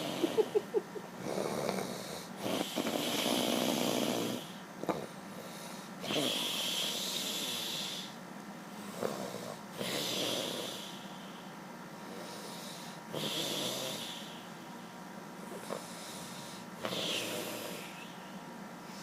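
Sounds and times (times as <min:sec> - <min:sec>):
person snoring: 0:00.0 - 0:05.1, 0:06.0 - 0:08.2, 0:08.9 - 0:11.0, 0:12.2 - 0:14.4, 0:15.5 - 0:18.2.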